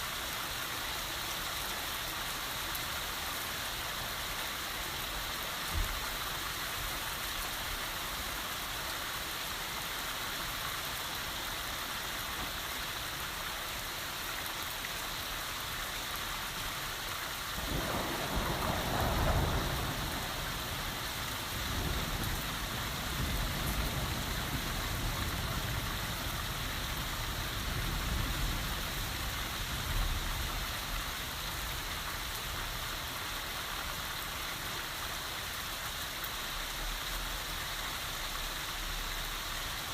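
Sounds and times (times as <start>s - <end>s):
heavy rain: 0.0s - 39.9s
thunder rumbling: 17.6s - 30.7s.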